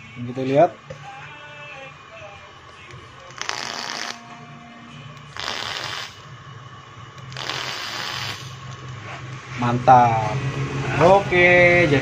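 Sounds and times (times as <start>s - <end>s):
vape coil crackling sizzle: 3.2s - 4.3s, 5.2s - 6.3s, 7.1s - 9.0s.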